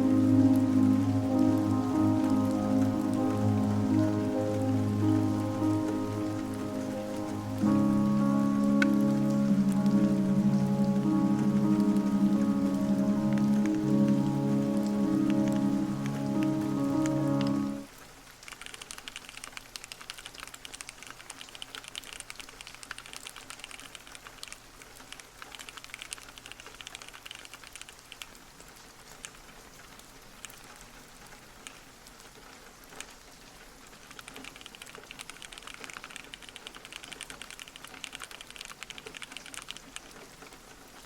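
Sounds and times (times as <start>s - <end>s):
fast mechanical keyboard typing: 18.5s - 28.3s, 34.2s - 40.2s.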